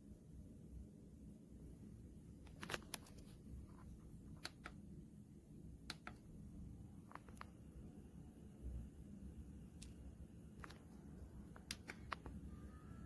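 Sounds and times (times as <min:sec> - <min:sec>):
faint room hum: 0:00.0 - 0:13.0
soft clicks: 0:04.3 - 0:04.8, 0:05.8 - 0:06.3, 0:09.8 - 0:10.0, 0:10.6 - 0:12.5.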